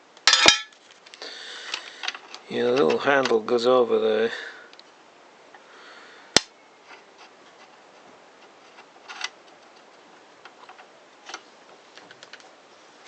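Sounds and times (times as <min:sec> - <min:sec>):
metal parts and tools clicking: 0:00.3 - 0:00.8
metal parts rattling: 0:00.3 - 0:01.0.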